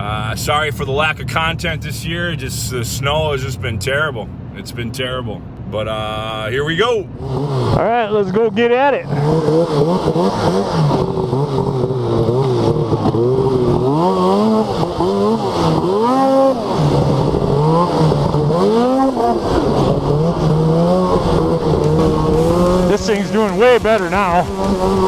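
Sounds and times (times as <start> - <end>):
snowmobile engine revving: 21.8 - 25.0.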